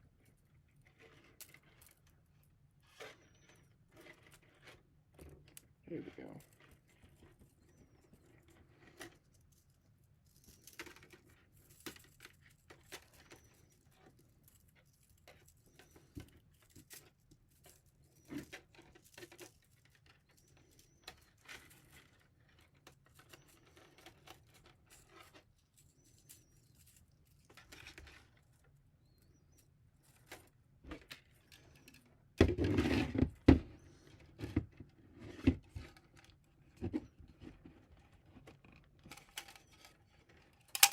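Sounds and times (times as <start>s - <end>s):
plastic filament clicks and rustles: 38.0s - 40.9s.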